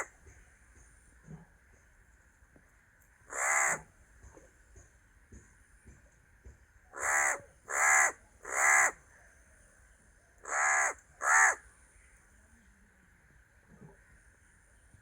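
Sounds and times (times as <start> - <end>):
crow cawing: 3.3 - 3.8, 7.0 - 8.9, 10.4 - 11.6.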